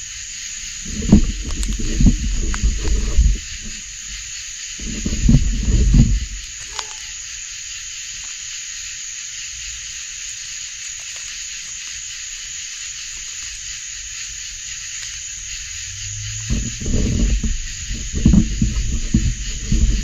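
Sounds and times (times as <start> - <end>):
crickets chirping: 0.0 - 20.0.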